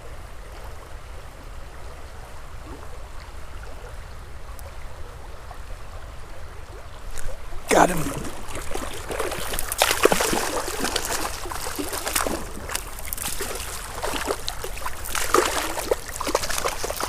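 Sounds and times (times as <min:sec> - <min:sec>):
creek water running: 0:00.0 - 0:17.0
fish splashing in water: 0:07.1 - 0:17.0.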